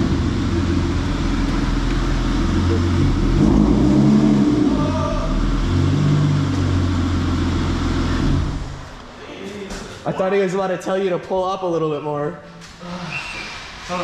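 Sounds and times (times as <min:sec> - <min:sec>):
car engine revving: 0:00.0 - 0:08.9.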